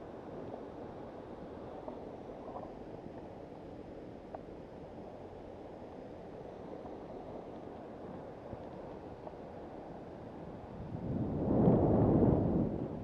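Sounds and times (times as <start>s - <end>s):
rushing wind: 10.8s - 13.0s.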